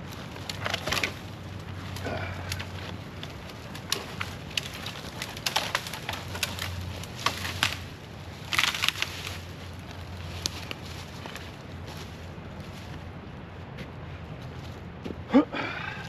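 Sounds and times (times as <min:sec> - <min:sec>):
wood cracking and knocking: 0:00.0 - 0:11.5
twigs snapping: 0:00.0 - 0:12.8
brush rustling: 0:00.0 - 0:13.2.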